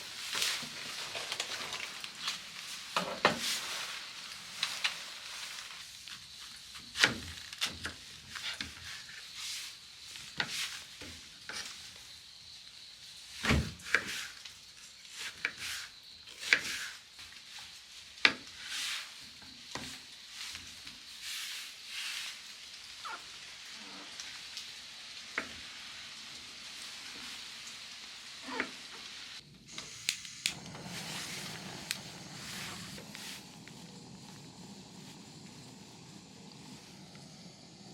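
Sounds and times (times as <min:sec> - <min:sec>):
steady sizzling: 0:00.0 - 0:37.9
sharp clicks and pops: 0:29.7 - 0:34.4.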